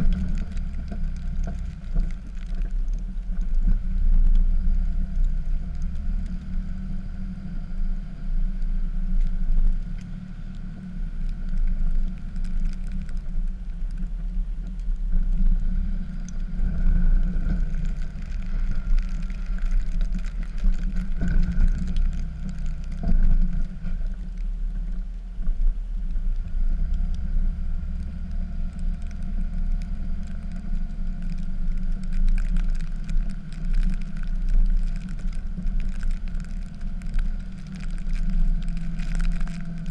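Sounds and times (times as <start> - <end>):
diesel engine rumbling: 0.0 - 39.9.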